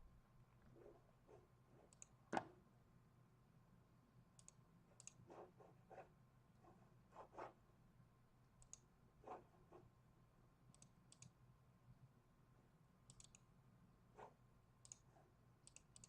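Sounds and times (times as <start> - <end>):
low room hum: 0.0 - 16.0
faint mouse clicks: 1.9 - 2.2, 4.4 - 5.2, 8.6 - 8.9, 10.7 - 11.4, 13.0 - 13.5, 14.8 - 16.0.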